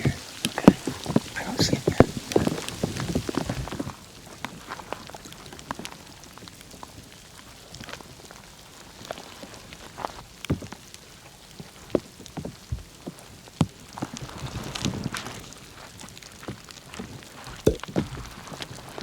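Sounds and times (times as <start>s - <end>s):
raindrops pattering: 0.0s - 10.0s.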